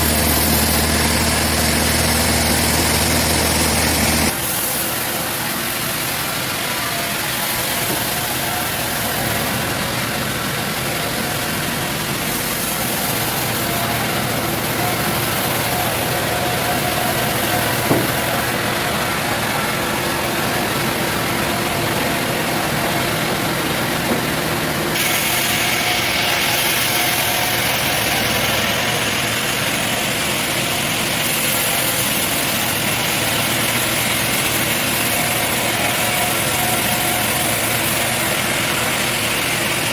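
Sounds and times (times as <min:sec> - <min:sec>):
sawmill machinery droning: 0:00.0 - 0:39.9
sharp knock: 0:17.9 - 0:18.3.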